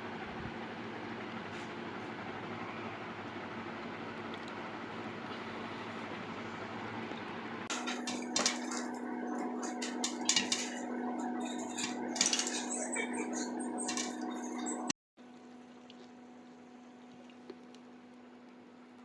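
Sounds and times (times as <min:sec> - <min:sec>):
steady low hum: 0:07.7 - 0:14.9
utensils clinking on dishes: 0:07.7 - 0:14.9.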